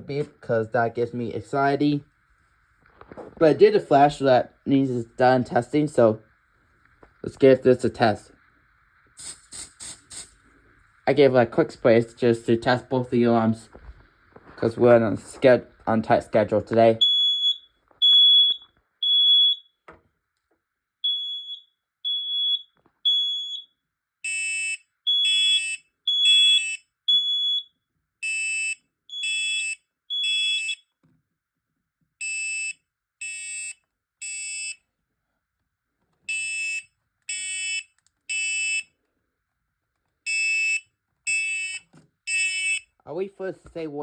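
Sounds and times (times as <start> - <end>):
spray of test smoke: 4.9 - 16.0
clear single-tone alarm beep: 17.0 - 19.7, 21.0 - 23.7, 24.3 - 30.8
harsh buzzy alarm beep: 17.0 - 19.7, 21.0 - 23.7, 24.3 - 30.8, 40.3 - 42.8.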